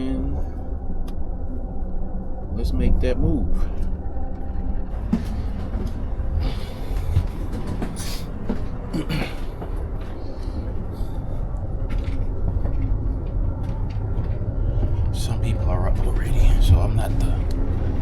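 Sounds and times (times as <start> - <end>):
train rumble from inside: 0.0 - 18.0
clatters and knocks: 4.4 - 15.3.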